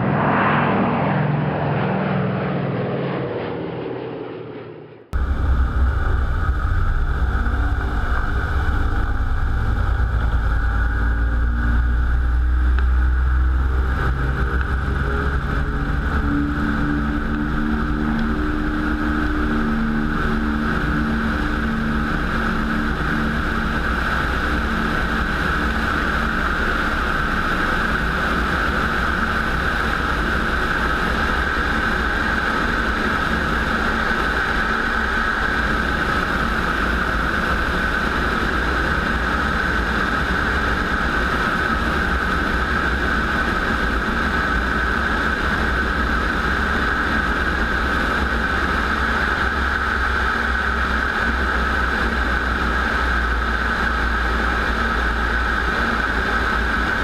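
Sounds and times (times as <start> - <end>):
piston aircraft engine rumbling: 0.0 - 57.0.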